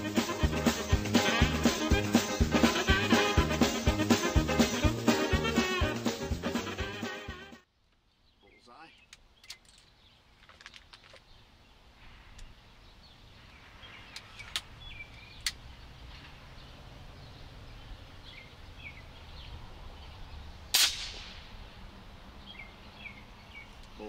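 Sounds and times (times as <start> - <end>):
birds chirping: 0.0 - 20.7, 21.3 - 24.0
air rifle shot: 20.7 - 21.5.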